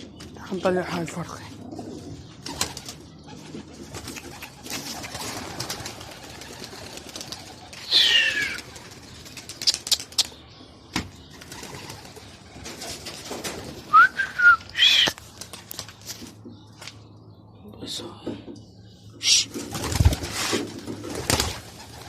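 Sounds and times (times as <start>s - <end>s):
pigeon squeaky calls: 7.2s - 10.5s, 13.9s - 15.2s.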